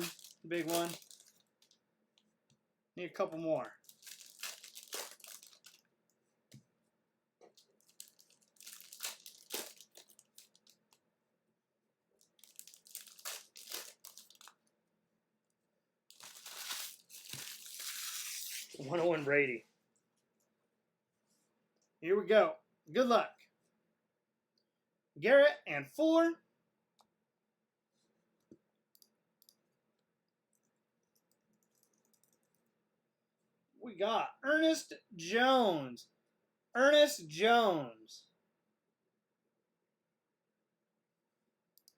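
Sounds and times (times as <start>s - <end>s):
wrappers crinkling and tearing: 0.0s - 1.8s, 3.8s - 5.8s, 7.6s - 11.0s, 12.2s - 14.6s, 16.1s - 19.0s.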